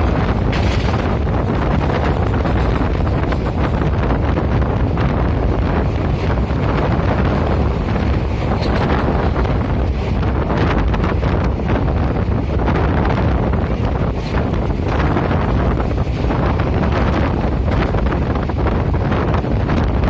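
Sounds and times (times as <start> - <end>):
moving train rumble: 0.0 - 20.0
wind buffeting microphone: 0.0 - 20.0.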